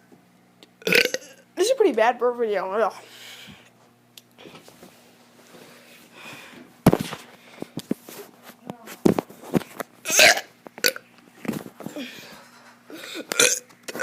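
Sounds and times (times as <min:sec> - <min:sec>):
child burping: 0:00.8 - 0:01.4, 0:10.0 - 0:11.0, 0:12.9 - 0:14.0.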